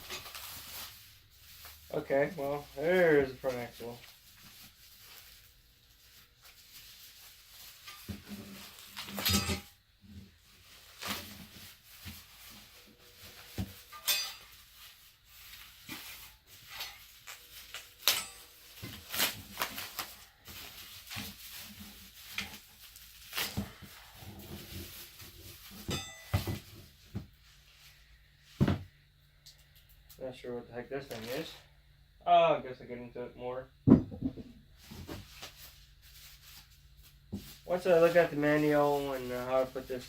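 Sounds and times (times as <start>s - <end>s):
packaging rustling: 0.0s - 9.3s, 10.5s - 27.1s.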